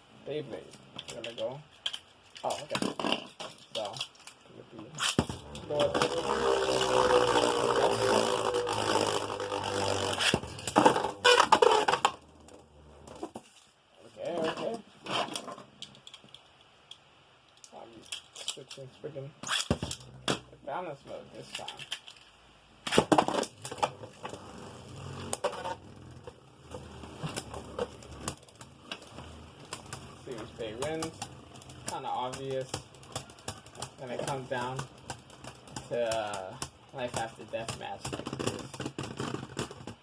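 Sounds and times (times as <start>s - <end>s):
spinning tops whirring: 5.0s - 13.2s
spinning tops whirring and scraping: 5.0s - 13.4s, 23.2s - 39.9s.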